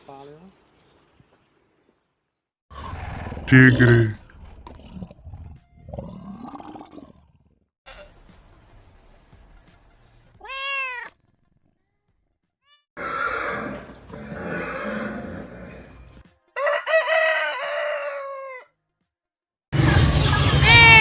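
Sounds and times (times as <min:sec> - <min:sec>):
animal calls: 0:13.0 - 0:16.1.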